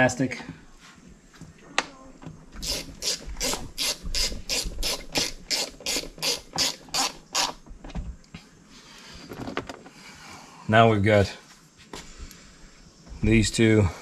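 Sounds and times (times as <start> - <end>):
hand ratchet clicking: 2.6 - 7.6.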